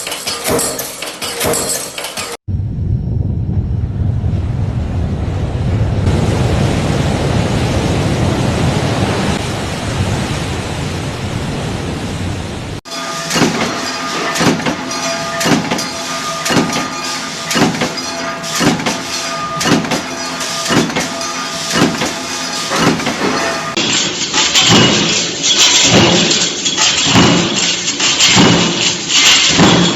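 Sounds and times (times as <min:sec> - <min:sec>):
machine striking: 0:00.0 - 0:02.4, 0:12.9 - 0:29.9
factory machinery rumbling: 0:02.2 - 0:29.9
machinery hum: 0:02.5 - 0:09.3.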